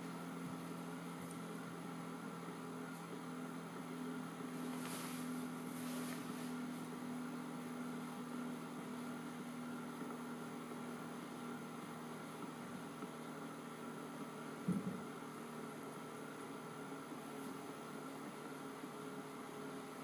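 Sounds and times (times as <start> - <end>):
hissy scrapes: 4.6 - 6.6.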